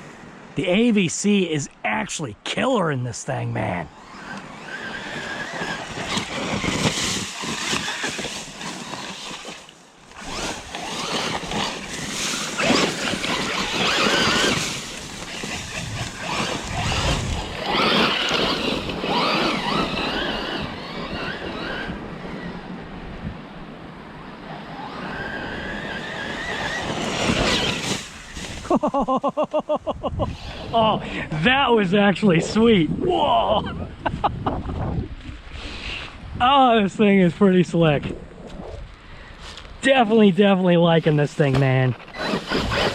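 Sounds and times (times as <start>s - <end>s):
electric motor whining: 3.9s - 22.6s, 24.5s - 28.6s, 42.0s - 42.9s
steady rushing noise: 10.2s - 20.8s.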